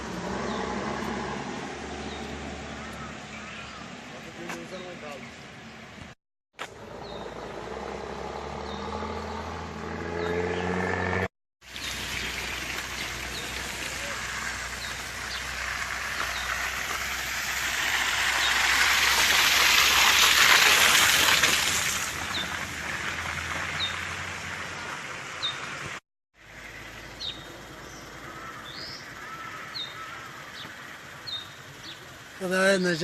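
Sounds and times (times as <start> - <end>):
rain hissing: 11.6 - 28.4.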